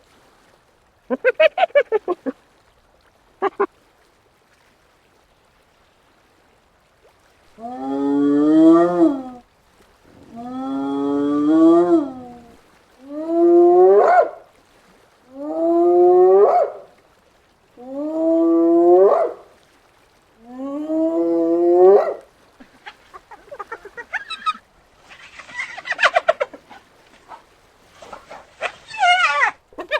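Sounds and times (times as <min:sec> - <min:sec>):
hyena whooping: 0:21.5 - 0:29.9.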